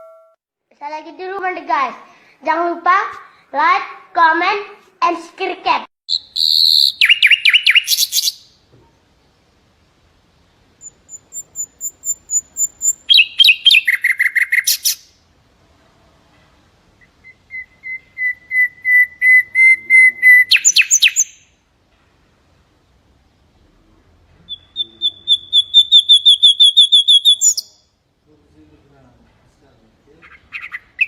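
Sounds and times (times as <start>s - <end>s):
bird whistling rapid notes: 10.8s - 15.0s, 17.2s - 21.3s, 24.5s - 27.8s.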